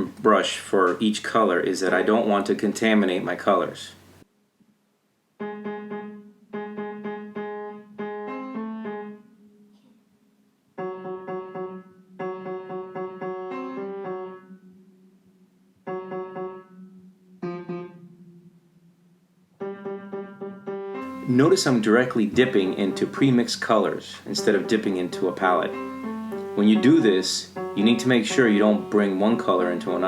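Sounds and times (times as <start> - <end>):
piano-like keyboard music: 5.4 - 9.7, 10.8 - 15.2, 15.8 - 18.7, 19.6 - 30.0.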